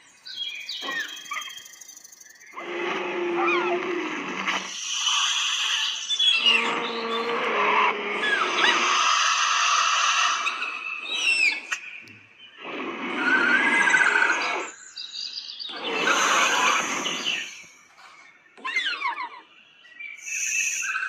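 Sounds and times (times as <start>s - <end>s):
gliding chirps and whistles: 0.0s - 21.0s
rasping creature bursts: 2.5s - 11.8s, 12.6s - 14.8s, 15.7s - 17.8s.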